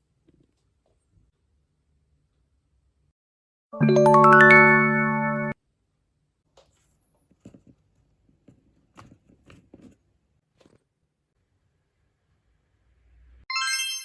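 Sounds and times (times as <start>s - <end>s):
electronic chime: 3.8s - 5.6s, 13.5s - 14.0s.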